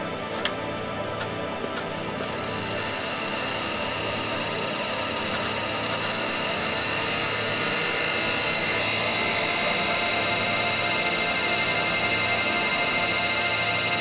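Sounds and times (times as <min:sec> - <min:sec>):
high whining tones: 0:01.8 - 0:14.0.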